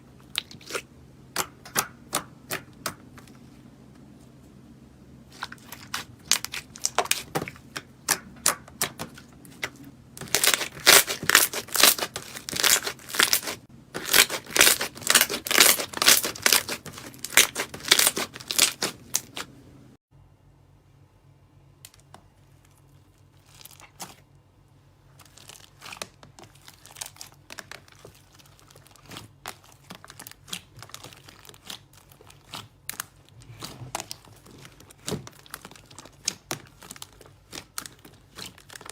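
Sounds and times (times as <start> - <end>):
slime crackling and popping: 5.3 - 19.5, 25.2 - 38.9.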